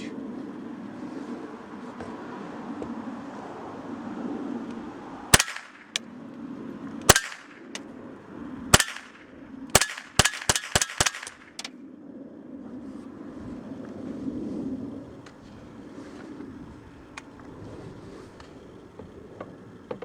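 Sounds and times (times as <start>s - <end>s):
rifle shots: 5.3s - 6.0s, 7.1s - 7.8s, 8.7s - 11.7s
sharp clicks: 9.8s - 11.7s.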